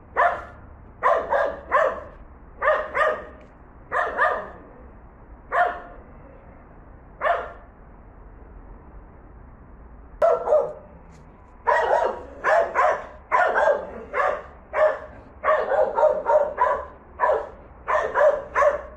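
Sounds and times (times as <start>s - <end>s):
dog barking: 0.2s - 4.6s, 5.5s - 6.0s, 7.2s - 7.6s, 10.2s - 10.9s, 11.6s - 18.9s.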